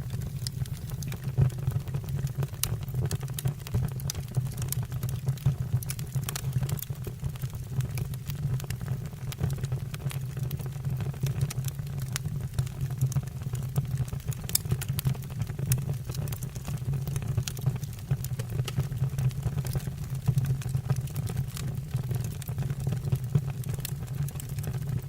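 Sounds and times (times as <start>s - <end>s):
fire low rumble: 0.0s - 10.6s
fire crackling and popping: 0.0s - 25.0s.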